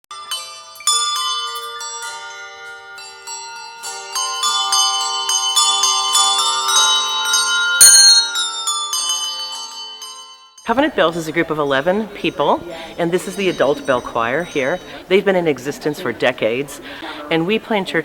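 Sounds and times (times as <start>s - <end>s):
handbell choir playing: 0.0s - 15.4s
loud sharp bell strike: 0.1s - 10.7s.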